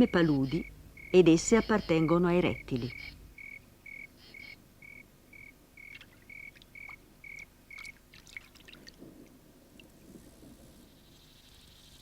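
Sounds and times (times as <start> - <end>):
cricket chirping: 0.0 - 8.0
water splashing and trickling: 5.8 - 10.0.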